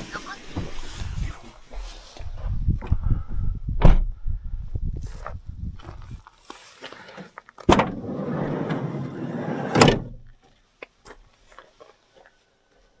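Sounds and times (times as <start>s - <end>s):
door banging shut: 3.8s - 4.1s, 7.7s - 10.3s
sliding door rolling on track: 7.7s - 10.2s.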